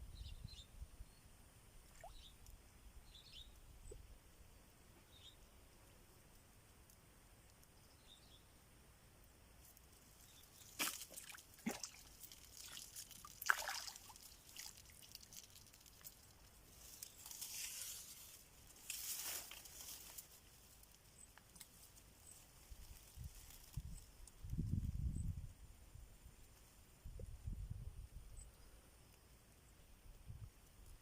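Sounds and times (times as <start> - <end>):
water splashes: 10.7 - 16.2.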